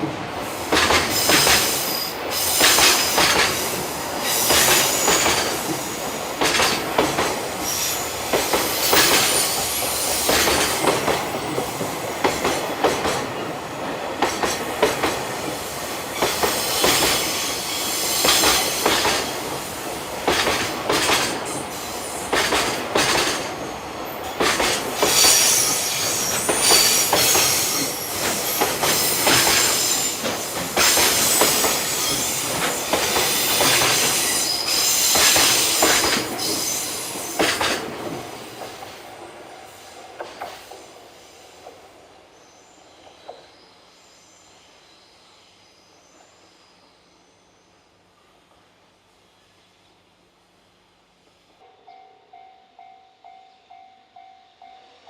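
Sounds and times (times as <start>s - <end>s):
train wheels clattering over joints: 0.6s - 39.0s.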